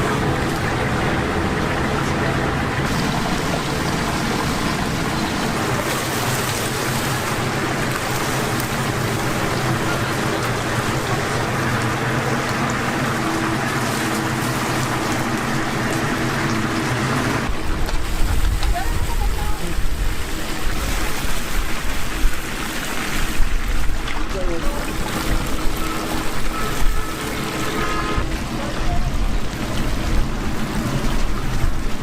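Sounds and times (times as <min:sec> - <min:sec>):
chicken sizzling in hot oil: 0:02.8 - 0:24.1.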